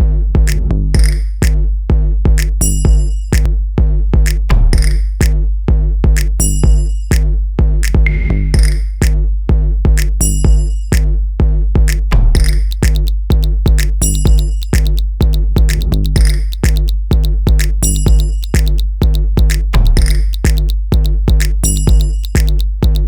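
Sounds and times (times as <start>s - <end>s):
electronic music with drum-machine beat: 0.4s - 1.6s, 2.3s - 3.5s, 6.1s - 9.2s, 9.9s - 11.1s, 11.8s - 23.0s.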